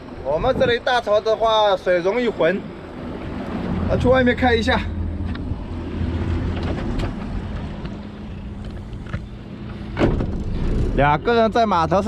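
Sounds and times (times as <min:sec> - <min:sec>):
wind noise: 0:00.0 - 0:01.2.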